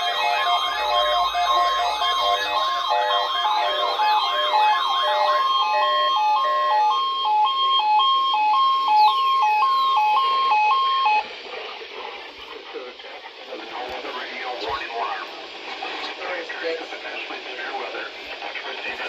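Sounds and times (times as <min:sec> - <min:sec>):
electronic sirens: 0:00.0 - 0:11.3.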